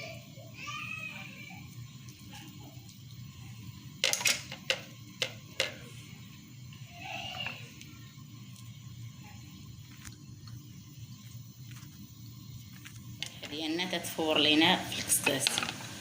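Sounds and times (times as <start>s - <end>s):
kitchen utensils clicking: 4.0s - 5.8s, 14.2s - 15.9s
faint high-pitched voice: 6.9s - 8.2s.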